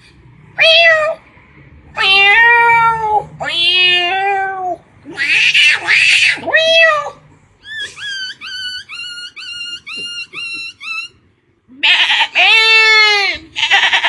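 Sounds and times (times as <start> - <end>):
person imitating cat meows: 2.0 - 7.2, 11.7 - 14.0
person imitating rising chirps: 7.6 - 11.2.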